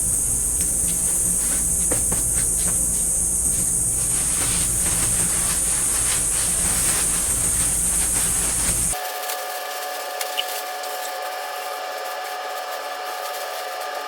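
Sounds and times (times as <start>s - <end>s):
cicadas droning: 0.0s - 9.0s.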